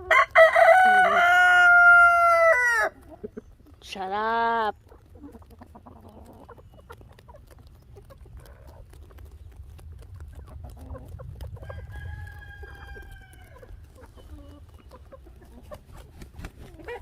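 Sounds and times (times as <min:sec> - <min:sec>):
chickens clucking: 0:00.0 - 0:17.0
rooster crowing: 0:00.1 - 0:03.0, 0:11.6 - 0:13.6.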